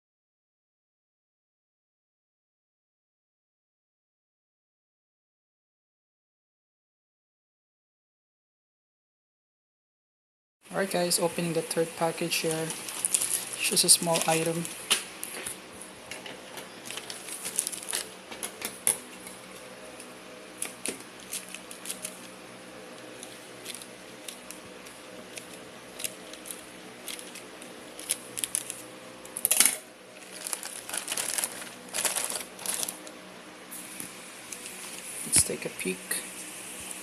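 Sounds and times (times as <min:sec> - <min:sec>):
packaging crinkling and tearing: 0:12.4 - 0:33.2.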